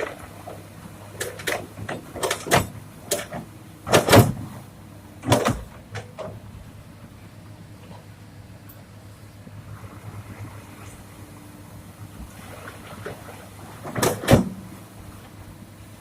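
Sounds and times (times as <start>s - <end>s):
diesel engine running: 0.0s - 16.0s
stones banging into truck bed: 1.2s - 4.5s, 5.2s - 6.3s.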